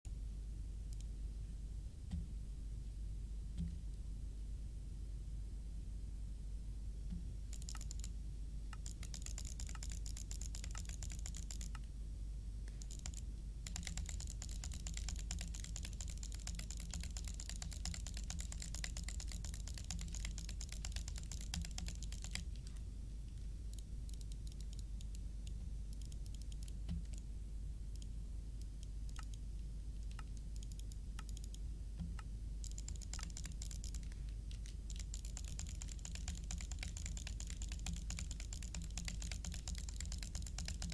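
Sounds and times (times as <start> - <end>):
steady low hum: 0.1 - 40.9
keyboard typing clicks: 7.1 - 11.9, 12.7 - 22.8, 23.7 - 27.3, 27.9 - 40.9.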